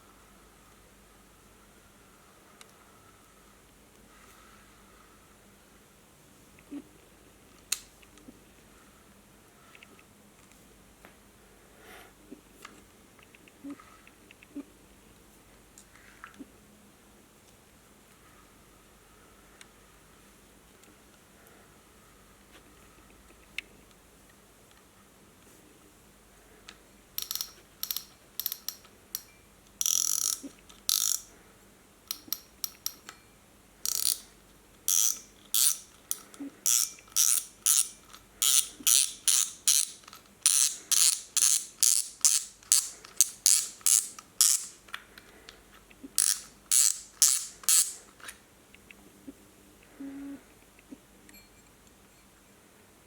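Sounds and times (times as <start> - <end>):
fishing reel ratcheting: 27.2 - 29.2, 29.8 - 31.3, 33.9 - 34.3, 34.9 - 44.7, 46.2 - 48.0.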